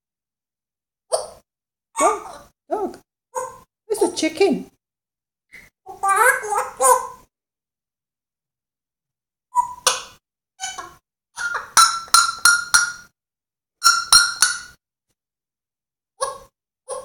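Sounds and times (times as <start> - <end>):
parrot clucking like a chicken: 1.1 - 1.4, 3.3 - 3.7, 5.9 - 7.3, 9.6 - 13.0, 16.2 - 17.0.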